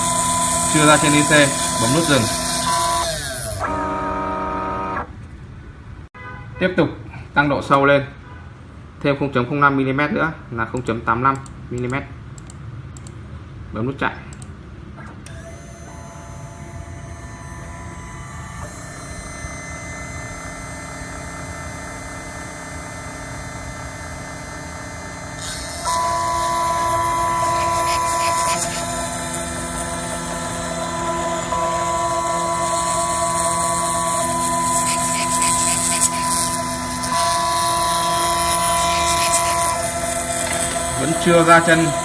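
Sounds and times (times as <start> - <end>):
milling machine whine: 0.0 - 5.1, 15.2 - 42.0.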